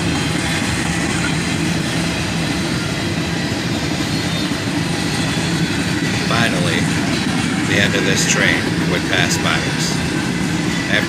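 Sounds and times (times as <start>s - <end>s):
train wheels rumbling on rail: 0.0s - 11.0s.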